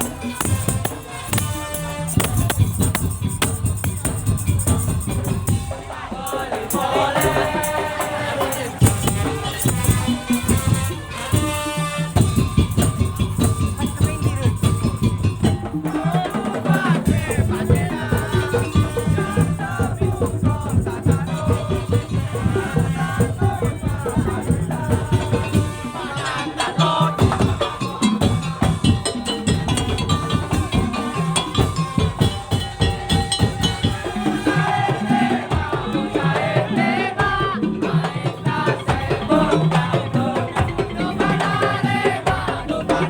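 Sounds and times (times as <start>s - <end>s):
pitched melody: 0.0s - 21.2s
drums: 0.0s - 43.0s
percussion ensemble playing: 0.0s - 43.0s
rattling percussion: 0.0s - 43.0s.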